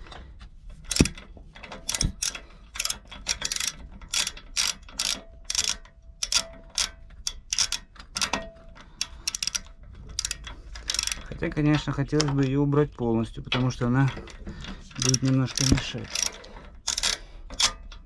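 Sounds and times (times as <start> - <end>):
ratchet wrench clicking: 0.9 - 1.2, 1.8 - 8.4, 9.0 - 11.3, 15.0 - 17.8.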